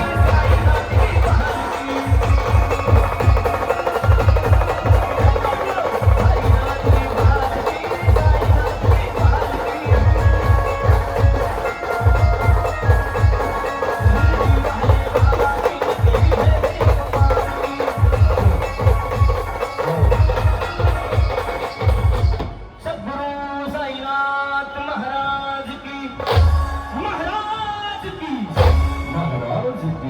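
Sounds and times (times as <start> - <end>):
horns playing melody: 0.0 - 2.8
bass drums beating: 0.0 - 22.5, 26.3 - 27.1, 28.6 - 29.3.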